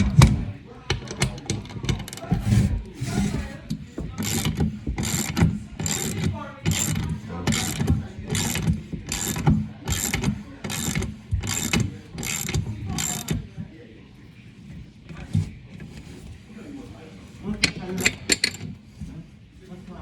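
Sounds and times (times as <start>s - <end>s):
ratchet wrench clicking: 4.2s - 13.4s.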